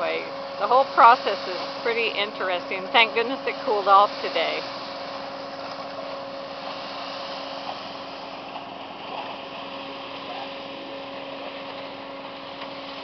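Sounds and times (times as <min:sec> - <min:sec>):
construction machinery engine hum: 0:00.0 - 0:13.0
even rushing noise: 0:00.7 - 0:05.2.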